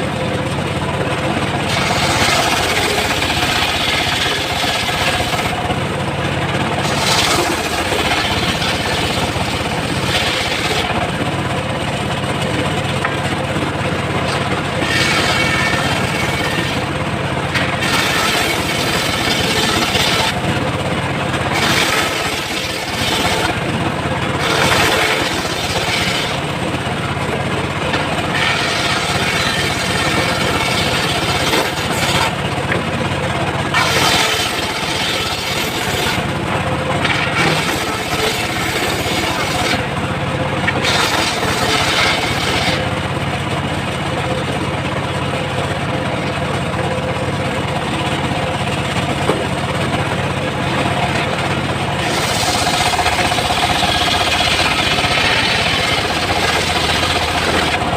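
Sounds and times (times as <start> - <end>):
sawmill machine humming: 0.0 - 57.9
saw blade cutting wood: 1.4 - 5.7, 6.6 - 11.4, 14.2 - 20.7, 21.4 - 32.8, 33.4 - 40.0, 40.7 - 43.5, 48.1 - 57.9.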